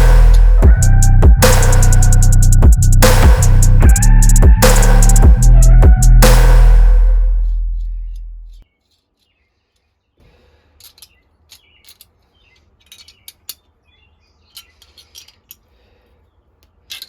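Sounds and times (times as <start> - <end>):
music: 0.0 - 8.5.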